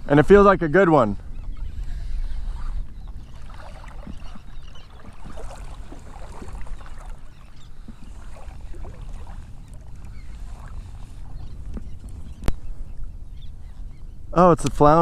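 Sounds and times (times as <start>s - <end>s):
wind buffeting microphone: 0.0s - 15.0s
shallow water splashing: 2.3s - 12.3s.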